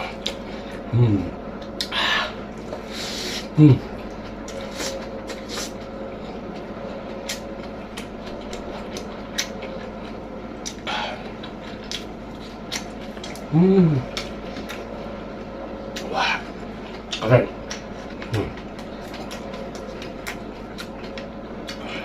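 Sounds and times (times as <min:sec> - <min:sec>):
chewing with mouth smacks: 0:00.0 - 0:00.8, 0:01.5 - 0:02.9, 0:03.8 - 0:22.0
person humming: 0:00.9 - 0:01.4, 0:03.6 - 0:03.9, 0:13.5 - 0:14.2.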